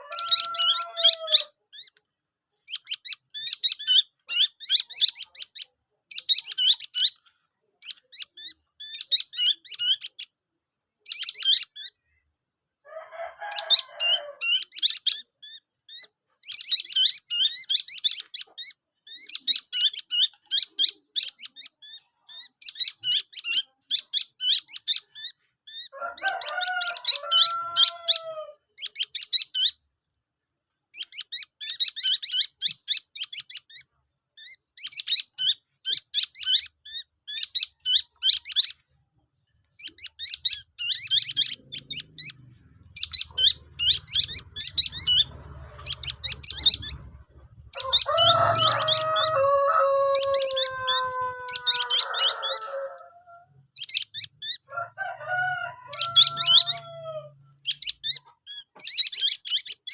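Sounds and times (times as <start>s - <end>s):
chick squeaky begging chirps: 0.0s - 2.0s, 2.6s - 10.4s, 11.0s - 12.2s, 12.9s - 29.9s, 30.9s - 59.9s
lower drawn-out bird call: 43.0s - 57.4s.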